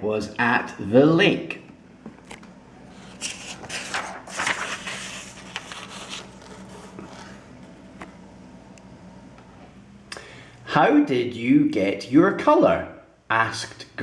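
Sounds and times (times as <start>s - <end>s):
faint low hum: 0.0s - 14.0s
handling scrapes and rustles: 2.9s - 7.5s.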